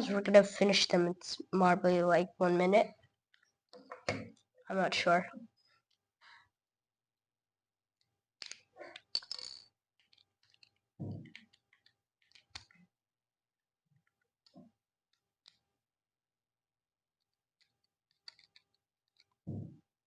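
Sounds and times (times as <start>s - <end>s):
plastic parts clicking: 8.4s - 12.8s, 17.6s - 19.4s.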